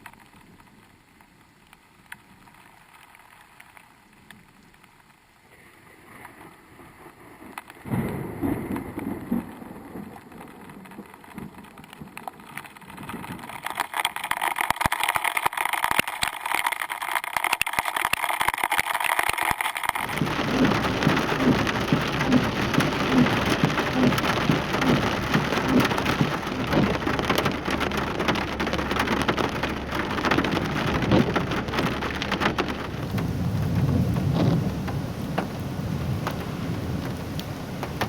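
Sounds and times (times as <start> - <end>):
torrential rain pouring: 0.0 - 38.0
thunder rumbling: 6.2 - 13.7, 20.0 - 38.0.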